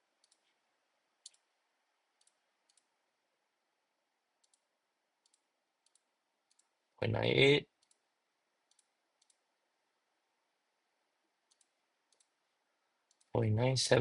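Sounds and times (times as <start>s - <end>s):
faint mouse clicks: 0.2s - 0.6s, 1.2s - 1.5s, 2.2s - 2.9s, 4.4s - 6.8s, 7.8s - 8.1s, 8.7s - 9.5s, 11.4s - 12.4s, 13.0s - 13.3s.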